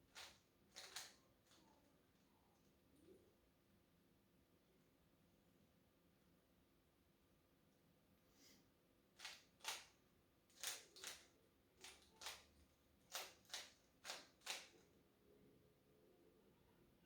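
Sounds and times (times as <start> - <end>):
plastic cube clicks: 0.2 - 1.1.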